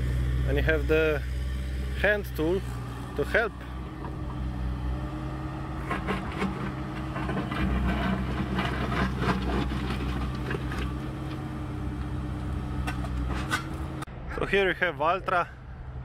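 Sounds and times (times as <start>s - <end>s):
excavator diesel engine running: 0.0s - 14.1s
digging scraping in soil and gravel: 2.0s - 14.1s.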